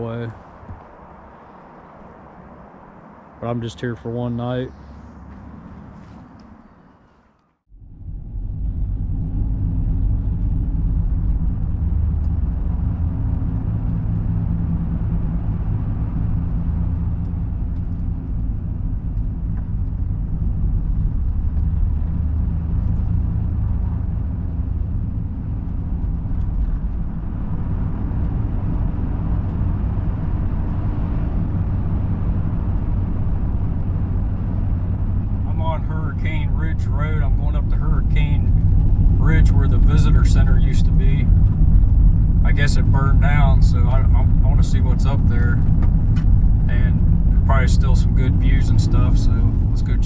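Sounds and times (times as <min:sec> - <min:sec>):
van engine and road noise: 0:00.0 - 0:50.0.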